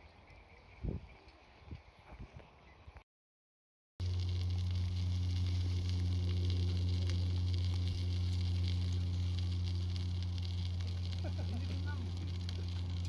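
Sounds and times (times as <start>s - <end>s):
campfire crackling: 4.0s - 13.0s
loud steady low hum: 4.0s - 13.0s.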